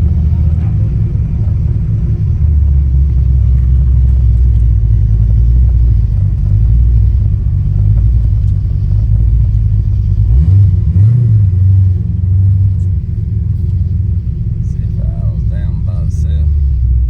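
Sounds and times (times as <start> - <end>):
car engine rumbling and revving: 0.0 - 17.0.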